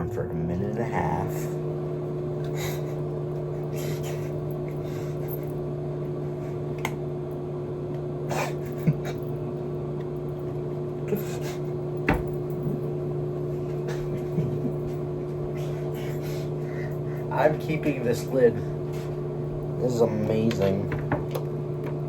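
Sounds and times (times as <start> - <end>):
microwave oven humming: 0.0 - 22.0.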